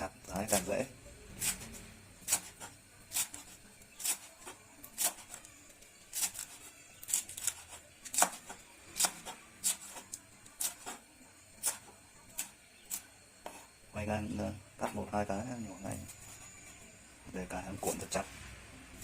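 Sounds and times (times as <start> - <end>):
knife slicing leaves on cutting board: 1.4 - 5.4, 6.1 - 11.0.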